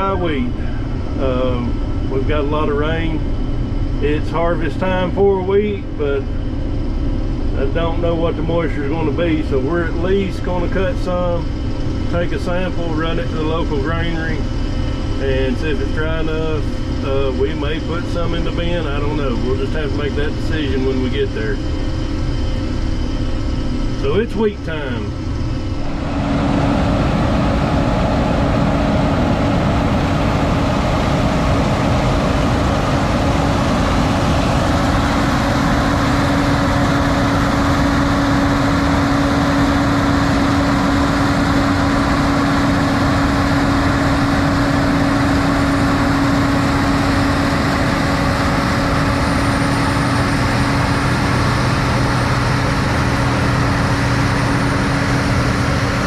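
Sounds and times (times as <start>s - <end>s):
vehicle engine running: 0.0s - 56.0s.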